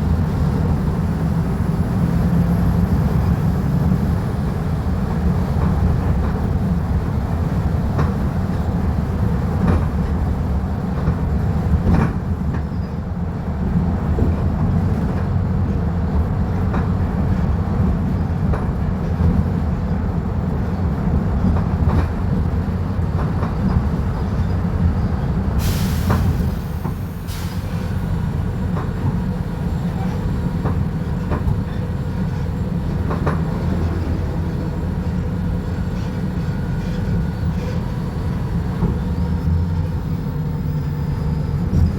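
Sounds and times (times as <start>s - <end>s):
bus diesel engine rumbling: 0.0s - 41.9s
short air hisses: 25.6s - 28.0s.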